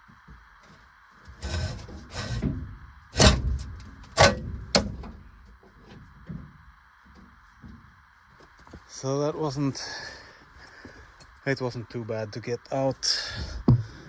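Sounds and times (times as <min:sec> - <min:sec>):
hose rubbing and scraping: 0:01.3 - 0:05.1.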